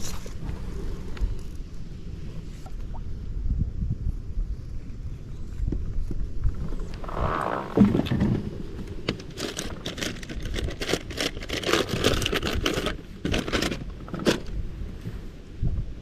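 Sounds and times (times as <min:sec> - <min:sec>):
rustling crinkling handling noise: 0:07.0 - 0:14.5.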